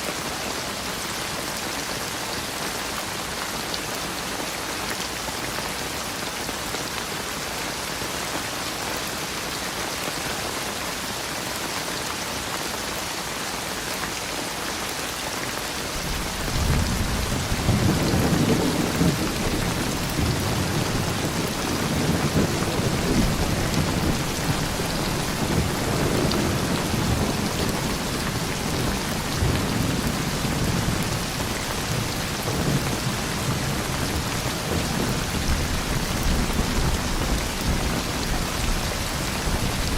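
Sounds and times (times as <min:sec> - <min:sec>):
steady rain falling: 0:00.0 - 0:39.9
thunder rumbling: 0:16.0 - 0:39.9.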